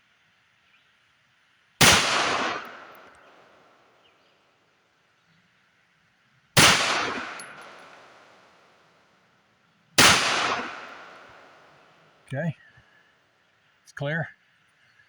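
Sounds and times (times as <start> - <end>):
pistol shots with echo: 1.8 - 3.8, 6.6 - 8.8, 10.0 - 12.1.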